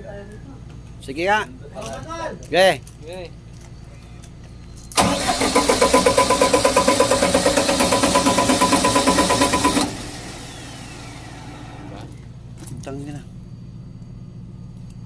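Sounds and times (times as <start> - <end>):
electric starter cranking engine: 4.9 - 12.3.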